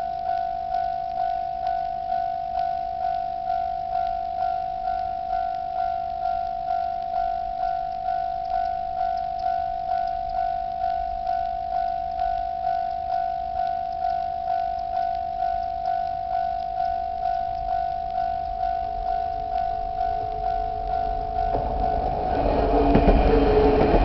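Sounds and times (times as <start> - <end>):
faint approaching train: 21.1 - 24.0.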